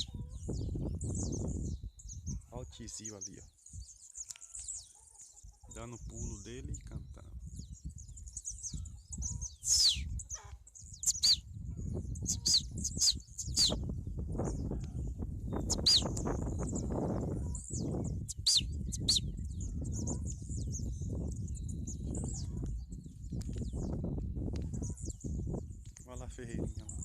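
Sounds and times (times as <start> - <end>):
bird chirping: 0.0 - 27.0.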